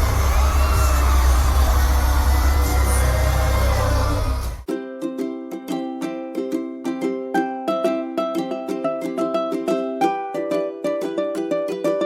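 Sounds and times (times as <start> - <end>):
plucked string instrumental music: 2.7 - 12.0.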